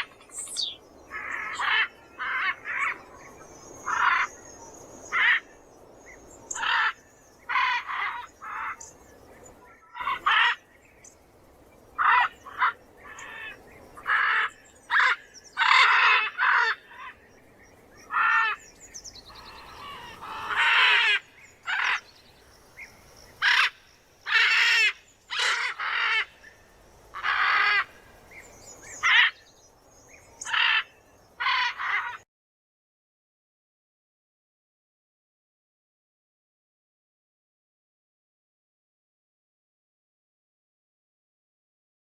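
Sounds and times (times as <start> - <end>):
macaw squawking: 12.0 - 17.2, 19.4 - 22.1, 23.4 - 26.4.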